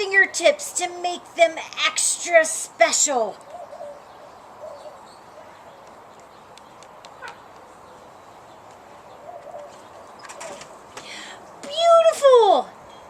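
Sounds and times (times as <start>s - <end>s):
steady background hiss: 0.0s - 13.0s
faint bird calls: 3.4s - 11.2s.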